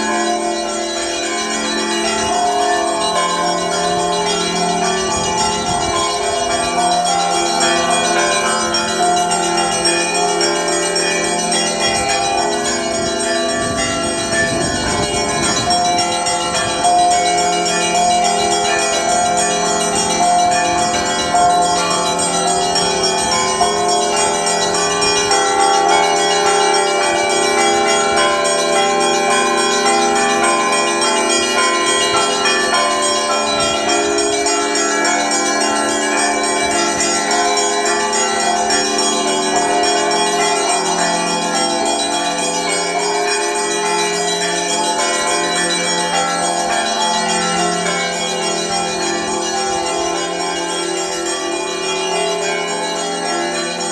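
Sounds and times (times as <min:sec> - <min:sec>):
church bells pealing: 0:00.0 - 0:53.9
deep bell tolling: 0:00.0 - 0:53.9.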